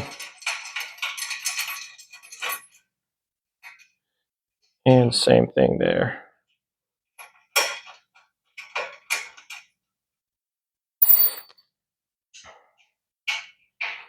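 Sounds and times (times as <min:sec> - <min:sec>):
loud ringing metal clink: 0:11.0 - 0:11.5
metallic clinks of bolts on steel: 0:11.0 - 0:11.5.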